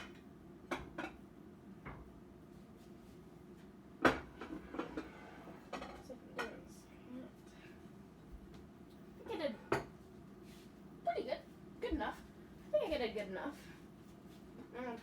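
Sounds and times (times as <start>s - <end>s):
plates and pan clattering: 4.0s - 6.6s.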